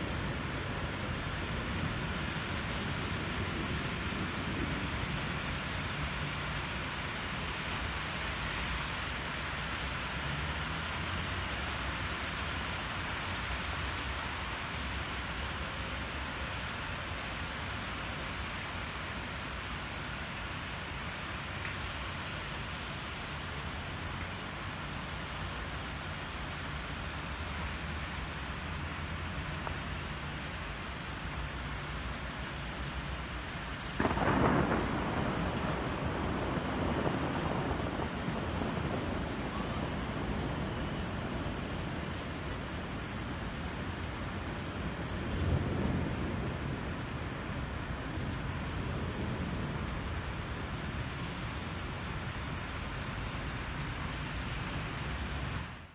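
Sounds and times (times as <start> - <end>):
hail and rain falling: 0.0 - 55.9.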